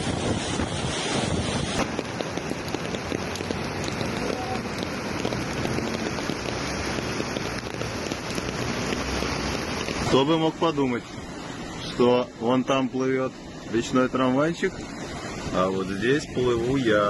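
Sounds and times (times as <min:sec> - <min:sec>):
wind buffeting microphone: 0:00.0 - 0:10.2
heavy rain pouring: 0:00.0 - 0:17.0.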